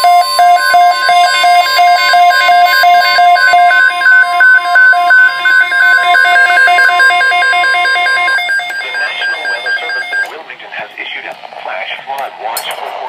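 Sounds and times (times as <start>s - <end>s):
rapid two-pitch beeping alarm: 0.0s - 10.3s
steady warning alarm tone: 0.0s - 10.3s.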